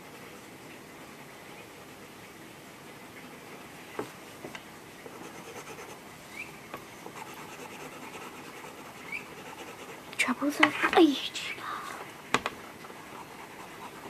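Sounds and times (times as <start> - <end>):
pencil scratching on paper: 5.1 - 6.0, 7.1 - 10.1, 12.9 - 14.0
pencil taps: 10.6 - 11.0.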